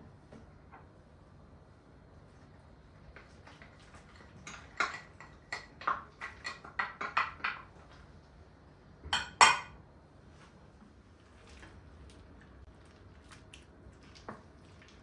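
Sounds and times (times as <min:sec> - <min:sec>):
utensil clinking against dishes: 0:04.2 - 0:07.7, 0:09.1 - 0:09.8.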